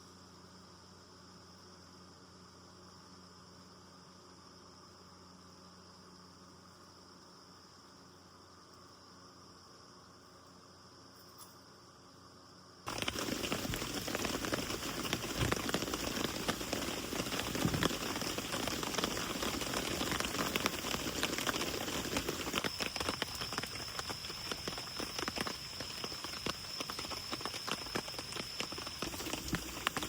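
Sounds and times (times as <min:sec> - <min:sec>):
faint hum: 0:00.0 - 0:30.0
rain pattering on a surface: 0:12.9 - 0:30.0
thin steady high tone: 0:12.9 - 0:30.0.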